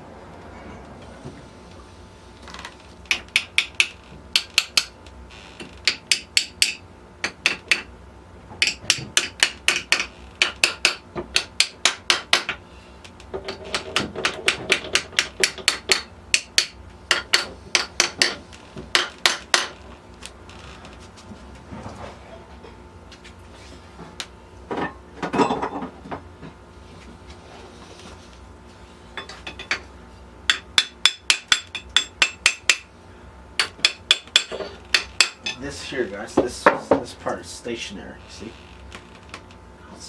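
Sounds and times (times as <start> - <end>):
hammer tapping: 3.1 - 4.9, 5.8 - 7.9, 8.6 - 12.6, 13.5 - 19.8, 30.5 - 32.9, 33.6 - 35.6.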